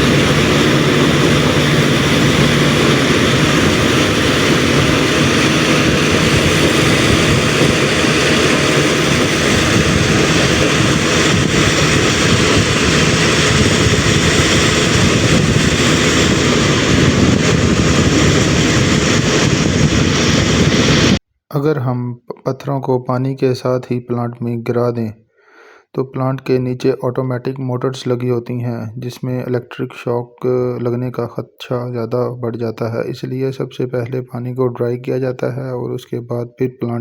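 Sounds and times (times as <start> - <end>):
low engine hum: 0.0 - 21.2.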